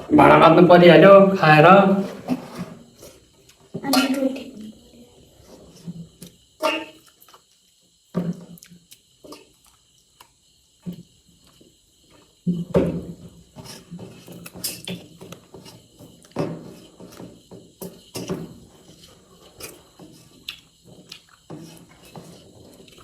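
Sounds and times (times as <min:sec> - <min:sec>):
chewing and mouth smacks: 0:07.0 - 0:07.8, 0:08.5 - 0:10.4, 0:20.3 - 0:21.5.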